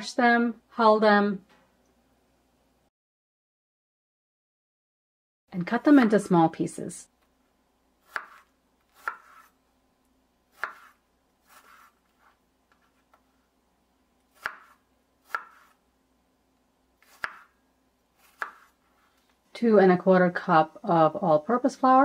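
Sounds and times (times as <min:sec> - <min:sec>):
knife chopping strawberries: 0:08.0 - 0:09.6, 0:10.5 - 0:13.3, 0:14.2 - 0:15.8, 0:17.0 - 0:17.6, 0:18.2 - 0:18.8.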